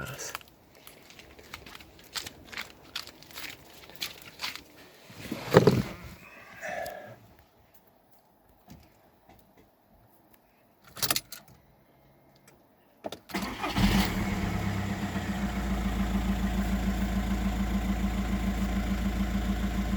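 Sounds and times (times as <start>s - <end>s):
diesel engine cranking and idling: 13.3s - 19.9s.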